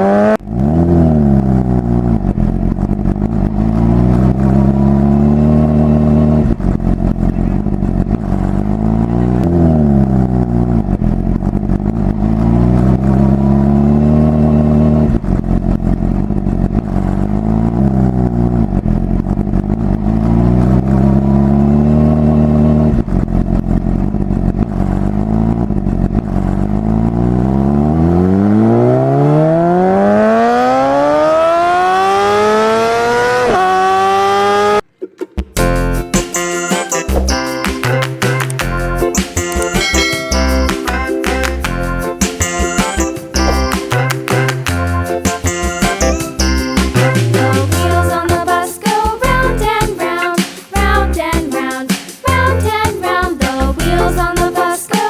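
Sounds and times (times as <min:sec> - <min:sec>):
motorcycle engine revving: 0:00.0 - 0:35.6, 0:46.4 - 0:48.3.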